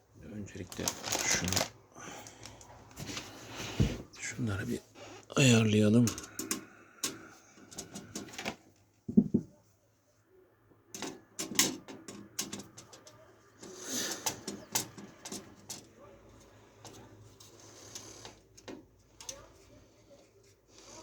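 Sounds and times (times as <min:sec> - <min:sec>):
computer parts clicking and knocking: 0:05.9 - 0:09.5, 0:10.9 - 0:16.0.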